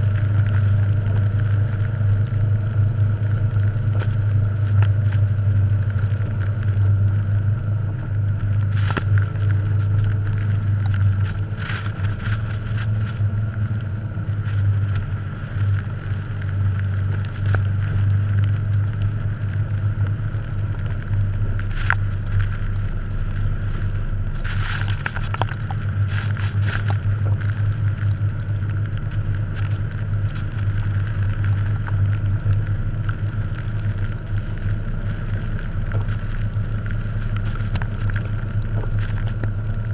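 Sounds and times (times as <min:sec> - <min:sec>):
engine running with low drone: 0:00.0 - 0:39.9
tyres crunching through snow: 0:00.0 - 0:39.9.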